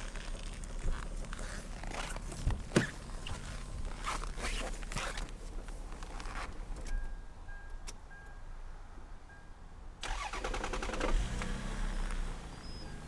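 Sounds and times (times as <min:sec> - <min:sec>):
faint beep: 0:06.9 - 0:08.6, 0:09.2 - 0:09.6, 0:12.5 - 0:13.0
starter cranking engine: 0:10.0 - 0:11.6.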